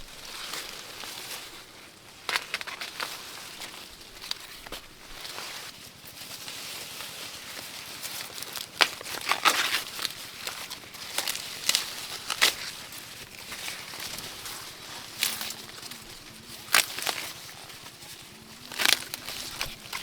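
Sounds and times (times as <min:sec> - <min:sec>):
dry plants rustling and crackling: 0:00.0 - 0:20.0.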